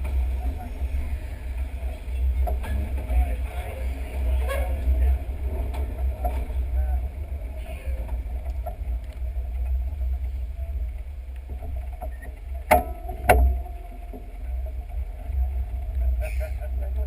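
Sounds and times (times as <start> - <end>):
train rumble with faint whine: 0.0 - 17.0.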